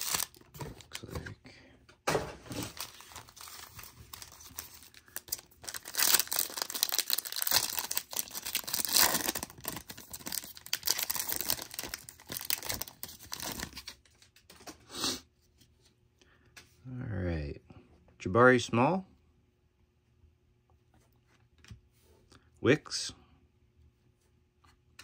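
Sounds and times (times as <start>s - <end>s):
wrapper tearing and crinkling: 0.0s - 1.1s, 2.6s - 14.0s.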